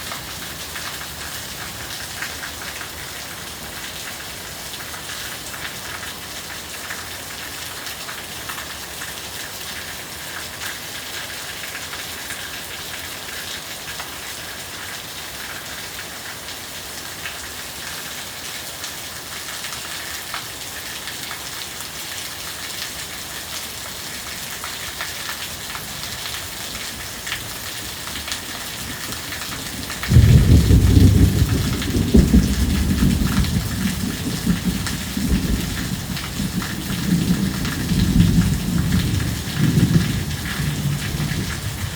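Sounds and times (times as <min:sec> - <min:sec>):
heavy rain pouring: 0:00.0 - 0:41.9
thunder clap rumbling: 0:28.4 - 0:41.9.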